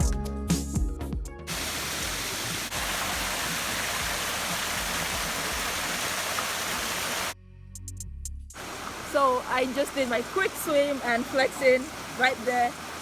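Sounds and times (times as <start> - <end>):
background music with a beat: 0.0 - 1.5, 7.6 - 8.6
waterfall rushing: 1.5 - 7.4, 8.6 - 13.0.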